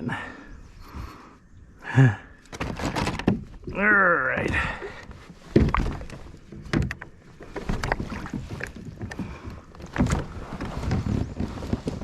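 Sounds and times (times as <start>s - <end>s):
kayak hull knocking: 4.4s - 12.0s.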